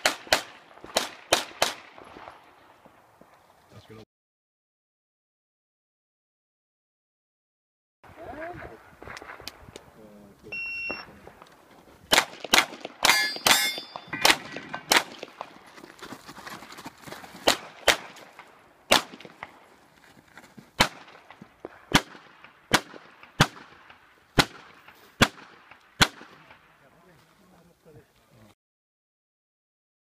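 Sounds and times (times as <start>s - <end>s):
pistol gunshots: 0.0s - 2.4s, 12.1s - 15.6s, 17.4s - 19.6s, 20.8s - 26.7s
steel target ringing: 13.0s - 15.0s.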